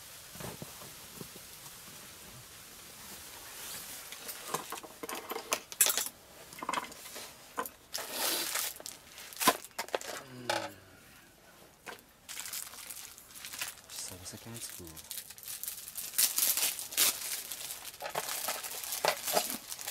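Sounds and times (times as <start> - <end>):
rustling: 0.0 - 19.9
small hard objects clinking: 4.2 - 10.8, 11.8 - 19.9.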